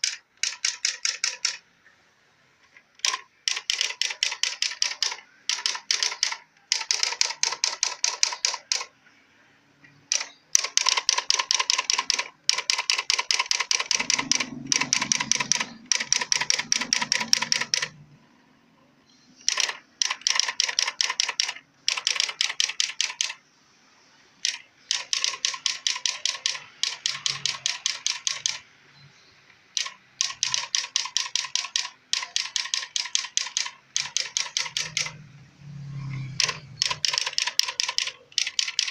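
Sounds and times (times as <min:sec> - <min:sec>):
electronic typewriter typing: 0:00.0 - 0:01.6, 0:02.9 - 0:08.9, 0:10.1 - 0:18.0, 0:19.4 - 0:23.4, 0:24.4 - 0:28.7, 0:29.6 - 0:35.3, 0:36.0 - 0:38.9
low hum: 0:14.0 - 0:19.1.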